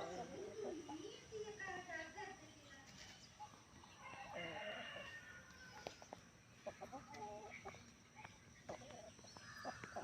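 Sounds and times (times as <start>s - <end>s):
faint chicken clucking: 0.0s - 1.3s, 3.0s - 10.0s.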